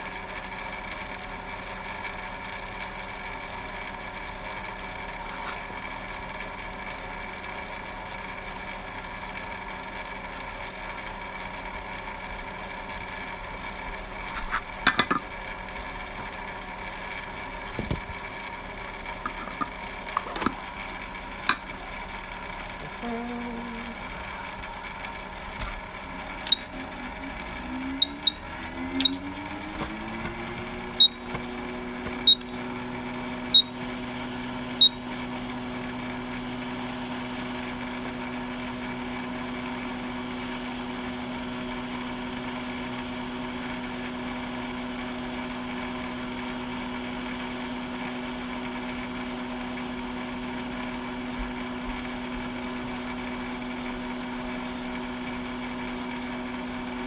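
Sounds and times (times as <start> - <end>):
hot air station fan humming: 14.2 - 40.8
button clicks with beeps: 27.9 - 32.7.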